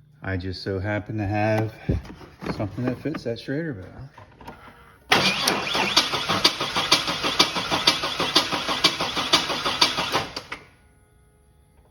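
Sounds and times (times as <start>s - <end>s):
engine cranking by starter: 5.1s - 10.7s.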